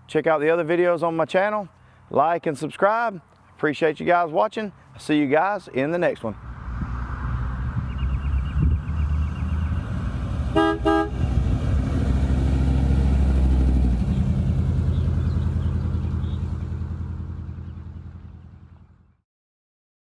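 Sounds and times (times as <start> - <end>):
car engine running: 7.8 - 19.1
car horn toot: 10.5 - 11.3.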